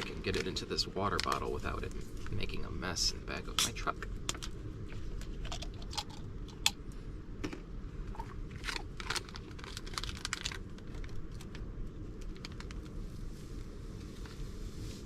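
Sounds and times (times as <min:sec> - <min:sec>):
pouch crinkling: 0:08.6 - 0:11.6.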